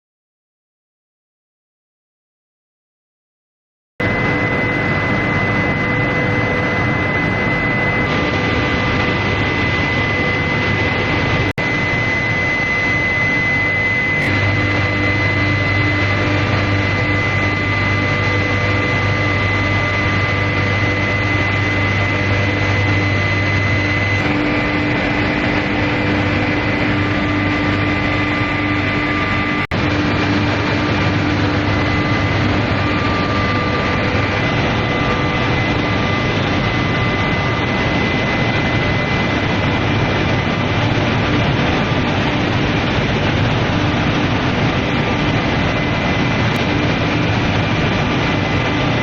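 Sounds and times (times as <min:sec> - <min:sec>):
high-pitched whine: 0:04.0 - 0:49.0
industrial machinery roar: 0:04.0 - 0:49.0
low hum: 0:04.0 - 0:49.0.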